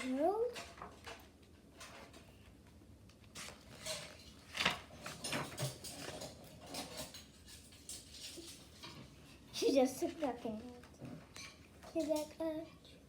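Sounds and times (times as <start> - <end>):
handling clicks rustles and knocks: 3.2 - 9.2.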